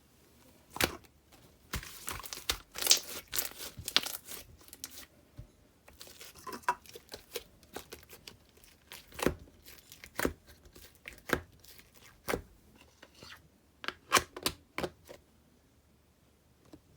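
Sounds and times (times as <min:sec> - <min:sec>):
slime crackling pops: 0:02.2 - 0:04.2.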